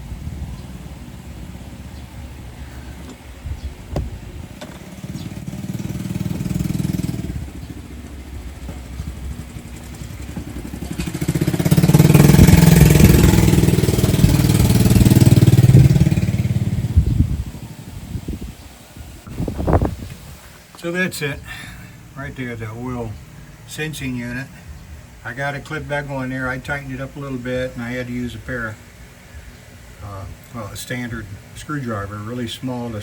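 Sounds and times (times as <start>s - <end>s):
vehicle engine passing by: 4.8s - 17.5s.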